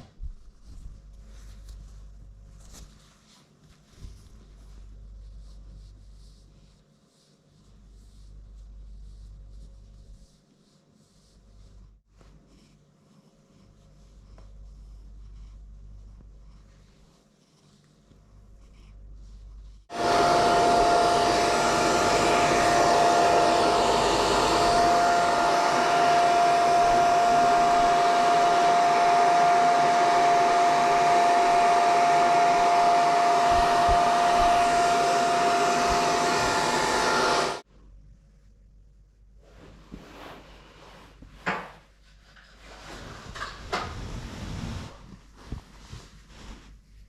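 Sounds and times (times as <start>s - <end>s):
hair dryer blowing: 19.9s - 37.7s.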